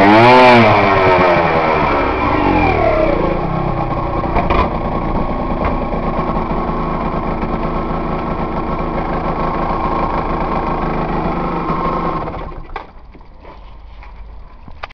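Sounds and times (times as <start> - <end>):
two-stroke motorcycle engine running: 0.0 - 12.7.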